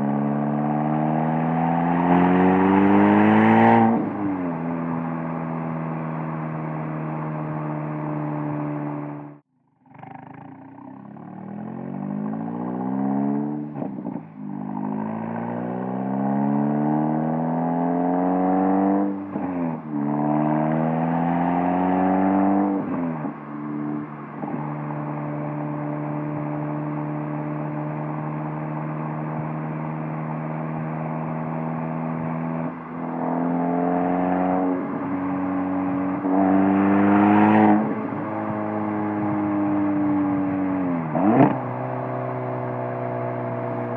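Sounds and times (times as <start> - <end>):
car exhaust revving through gears: 0.0 - 9.4, 10.7 - 43.9.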